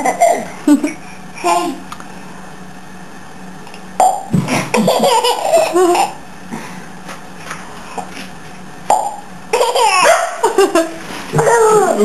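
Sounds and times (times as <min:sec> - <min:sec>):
baby laughing and babbling: 0:09.5 - 0:10.4.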